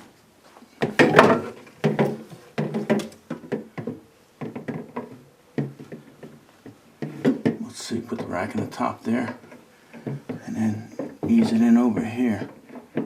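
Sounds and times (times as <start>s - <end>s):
refrigerator parts clunking and rattling: 0.9s - 3.1s.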